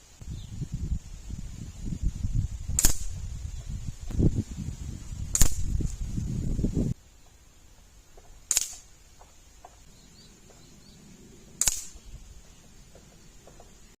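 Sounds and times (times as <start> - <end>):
low rumbling noise: 0.0 - 14.0
air rifle shots cracking: 2.8 - 3.2, 5.3 - 5.8, 8.4 - 8.9, 11.6 - 12.1.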